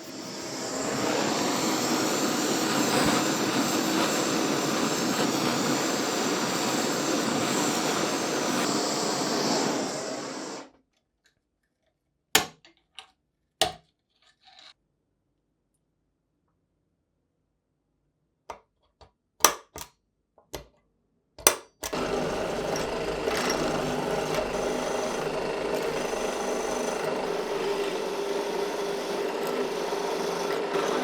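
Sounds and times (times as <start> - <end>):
workshop tool rushing noise: 0.0 - 10.6, 21.9 - 31.0.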